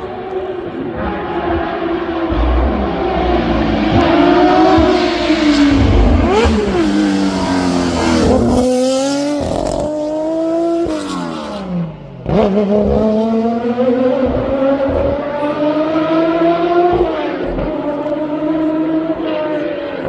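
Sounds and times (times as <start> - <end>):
racing car engines accelerating: 0.0 - 20.0.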